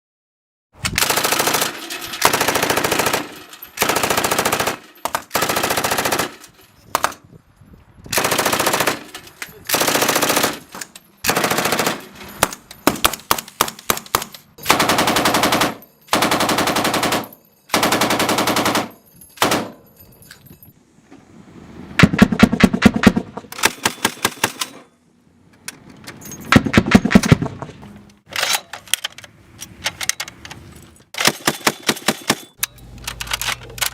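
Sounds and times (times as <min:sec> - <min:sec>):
automatic machine-gun fire: 0:01.0 - 0:04.8, 0:11.3 - 0:12.0
heavier gunshots: 0:22.0 - 0:24.5.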